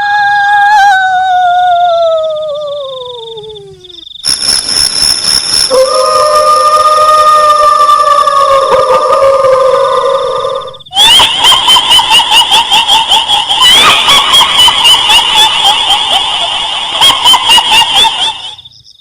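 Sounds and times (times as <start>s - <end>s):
steady held tone: 4.2s - 18.6s
shrill cackling laugh: 5.7s - 18.7s.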